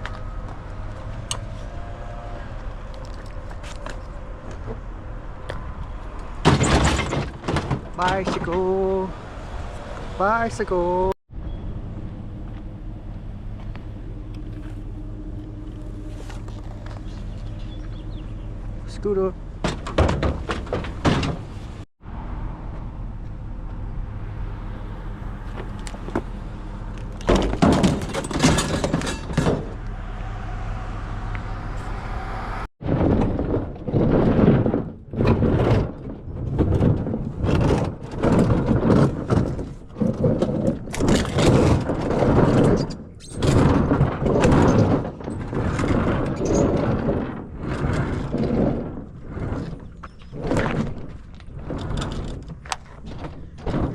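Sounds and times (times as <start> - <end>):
metal junk thudding and clattering: 6.4 - 8.7, 19.6 - 21.8, 27.1 - 29.8, 32.8 - 53.9
vehicle engine idling: 29.6 - 32.7.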